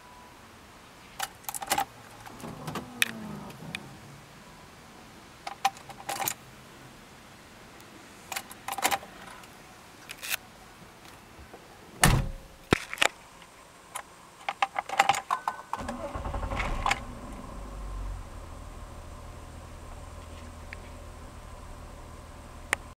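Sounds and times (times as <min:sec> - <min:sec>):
car electrics thunking: 0:01.7 - 0:03.9, 0:12.0 - 0:12.5
low steady rumble: 0:02.0 - 0:05.2, 0:15.8 - 0:22.9
heavy thump: 0:12.0 - 0:12.6.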